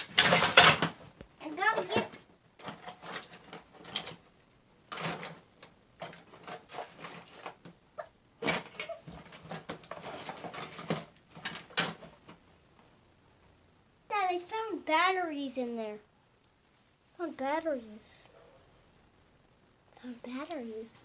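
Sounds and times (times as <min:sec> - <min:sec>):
plastic toys clattering: 0:00.0 - 0:07.8, 0:08.4 - 0:12.4.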